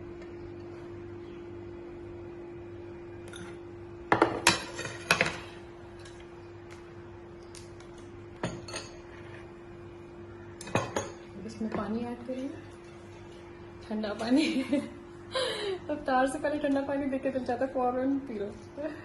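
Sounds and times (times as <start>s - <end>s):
steady low hum: 0.0s - 19.0s
dishes and cutlery clinking: 3.3s - 5.4s, 8.4s - 9.5s, 10.6s - 13.2s.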